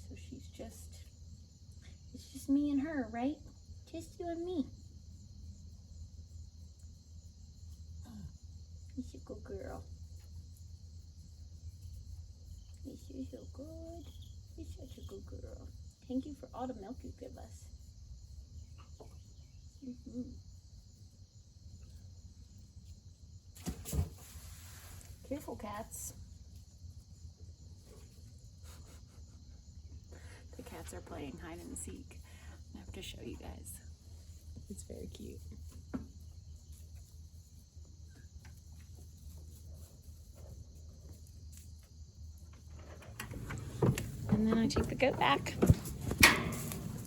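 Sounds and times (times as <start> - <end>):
steady low hum: 0.0 - 23.6
crickets chirring: 0.0 - 47.0.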